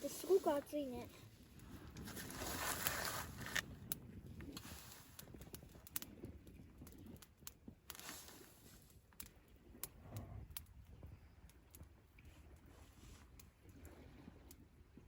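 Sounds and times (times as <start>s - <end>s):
campfire crackling: 0.0s - 12.3s
sharp pops and ticks: 2.8s - 8.1s, 9.1s - 10.8s.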